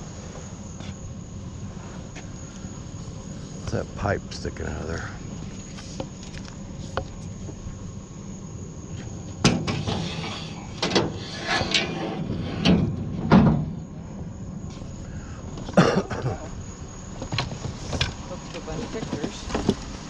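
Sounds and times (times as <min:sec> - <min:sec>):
low steady hum: 0:00.0 - 0:20.0
sharp knocks and clunks: 0:09.0 - 0:13.8.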